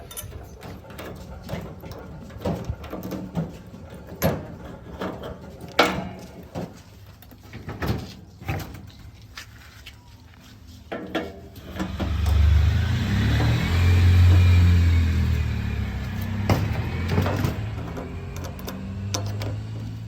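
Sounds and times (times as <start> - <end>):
heavy diesel engine running: 11.6 - 20.0.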